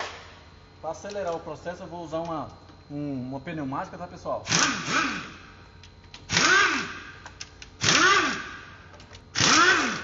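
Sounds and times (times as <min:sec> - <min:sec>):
pneumatic wrench whining: 0:04.4 - 0:05.6, 0:06.2 - 0:10.0.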